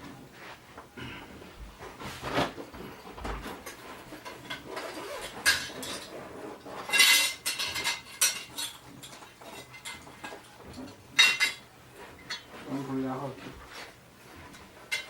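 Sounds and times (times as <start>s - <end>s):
metal tools clinking: 6.9s - 10.4s.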